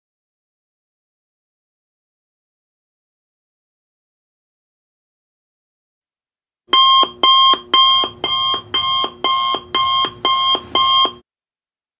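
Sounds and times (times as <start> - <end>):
electronic alarm tone: 6.7 - 11.2.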